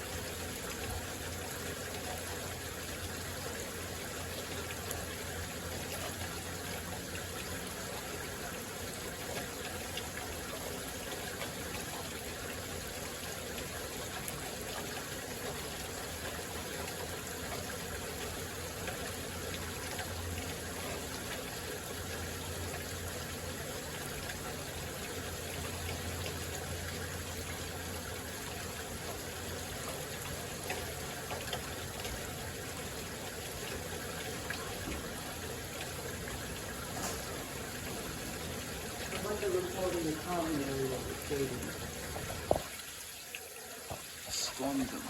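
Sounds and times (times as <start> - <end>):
heavy rain falling: 36.8 - 42.8.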